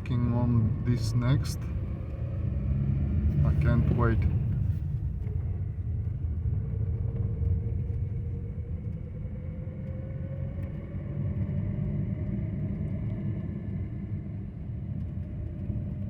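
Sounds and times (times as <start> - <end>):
car driving heard from inside: 0.0 - 10.9.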